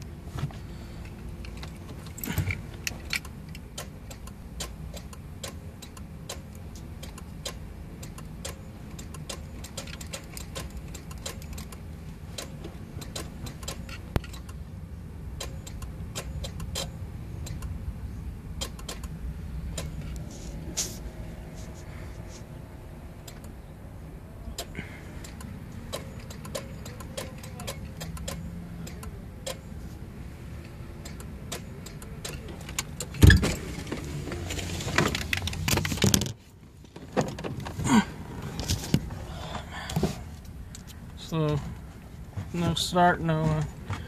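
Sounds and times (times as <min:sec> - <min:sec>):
car keys clicking and jangling: 0:01.0 - 0:14.6, 0:15.3 - 0:17.8, 0:18.5 - 0:22.4, 0:24.5 - 0:29.8, 0:30.6 - 0:37.8.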